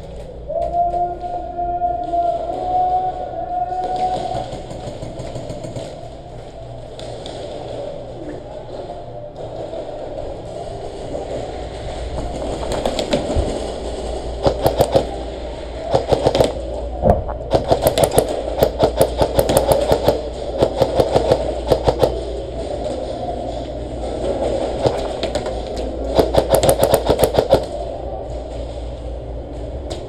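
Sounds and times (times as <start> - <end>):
airsoft guns firing: 3.7 - 6.2, 9.4 - 28.0
steady rumble: 4.5 - 30.0.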